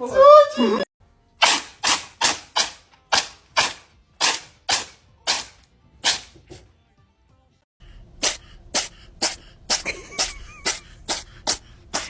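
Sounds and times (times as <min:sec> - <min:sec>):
pet sneezing: 0:01.4 - 0:06.7, 0:08.2 - 0:12.0.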